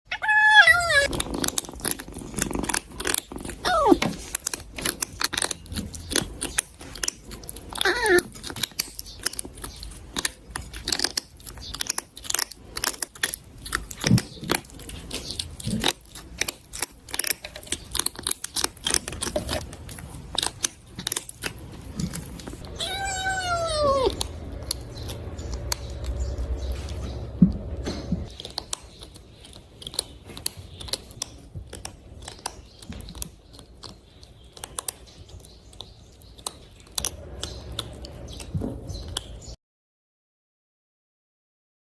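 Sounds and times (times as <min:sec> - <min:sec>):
cat meowing: 0:00.1 - 0:01.2, 0:03.6 - 0:04.0, 0:07.8 - 0:08.3, 0:22.6 - 0:24.3
cat chewing food noisily: 0:00.2 - 0:39.6.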